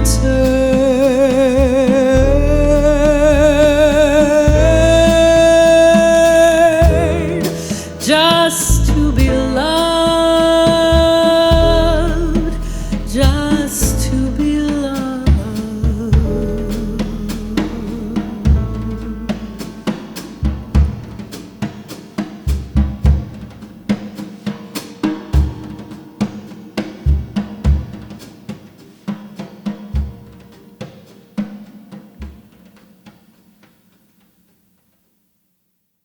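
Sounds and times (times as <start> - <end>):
jazz combo playing: 0.0 - 24.2
drum kit hits: 0.0 - 28.6.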